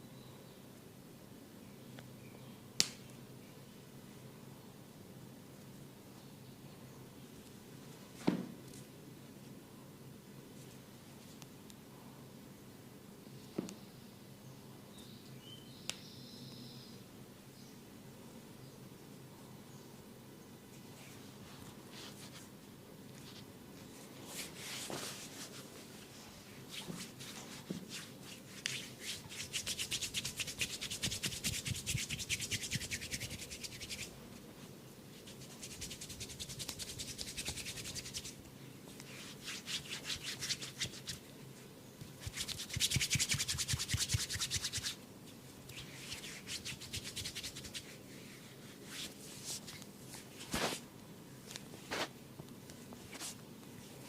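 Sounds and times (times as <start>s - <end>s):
massage rubbing on skin: 24.2s - 34.2s, 35.1s - 38.4s, 39.0s - 41.2s, 42.2s - 45.0s, 45.7s - 50.8s.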